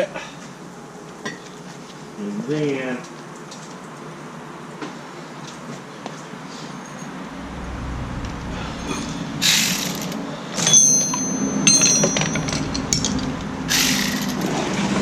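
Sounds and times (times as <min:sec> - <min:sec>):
short scraping rush: 0:07.3 - 0:10.3.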